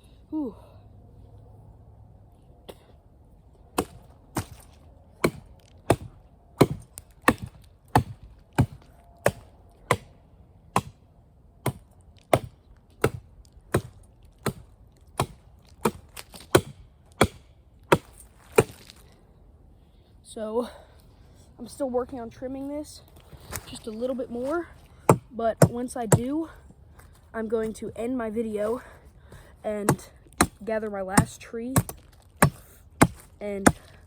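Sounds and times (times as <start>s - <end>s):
blade chopping tree trunk: 3.8s - 11.0s, 11.6s - 19.0s, 25.1s - 26.4s, 29.8s - 34.0s.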